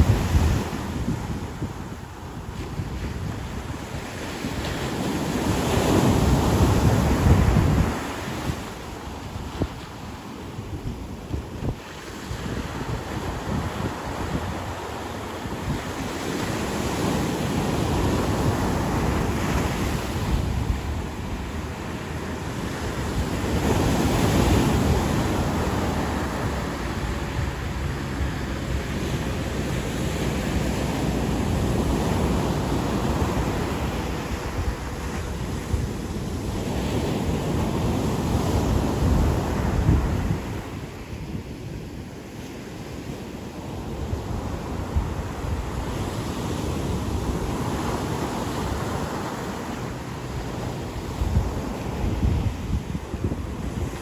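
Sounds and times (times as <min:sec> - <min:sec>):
ocean surf breaking: 0:00.0 - 0:42.8, 0:43.4 - 0:54.0
wind buffeting microphone: 0:00.0 - 0:54.0.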